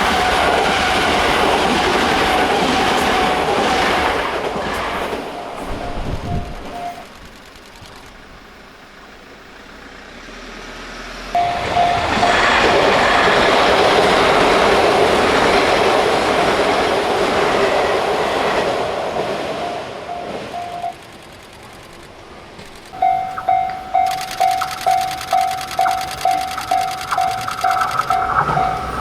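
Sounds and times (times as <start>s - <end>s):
train passing: 0.0s - 29.0s
level crossing warning bell: 5.2s - 7.1s, 11.4s - 15.1s, 19.6s - 21.0s, 23.0s - 29.0s.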